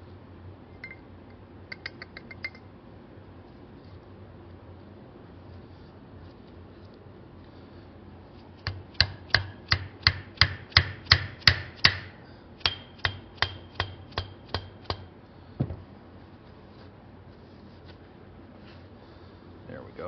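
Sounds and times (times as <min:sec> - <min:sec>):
hammer tapping on steel: 0:01.7 - 0:02.6, 0:08.6 - 0:15.1.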